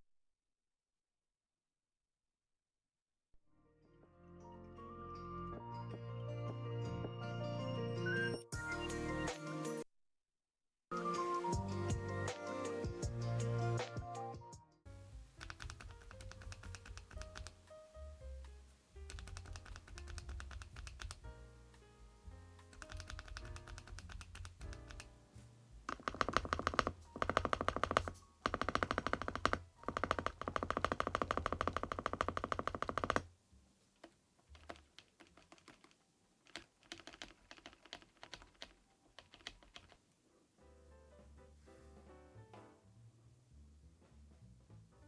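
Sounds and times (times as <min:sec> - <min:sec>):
background music: 0:03.6 - 0:09.8, 0:10.9 - 0:33.2, 0:40.6 - 0:45.0
mechanical keyboard typing: 0:15.4 - 0:17.6, 0:19.1 - 0:21.3, 0:22.7 - 0:25.2, 0:25.9 - 0:33.3, 0:34.0 - 0:40.0.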